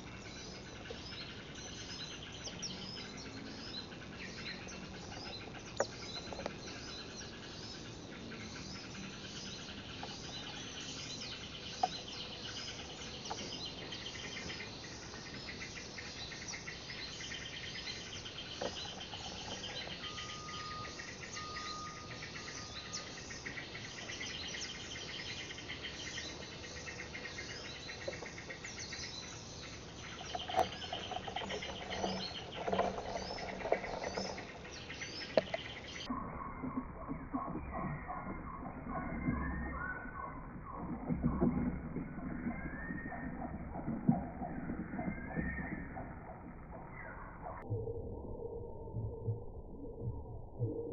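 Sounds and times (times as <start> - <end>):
insects trilling: 0.0 - 40.1
small birds chirping: 0.0 - 47.6.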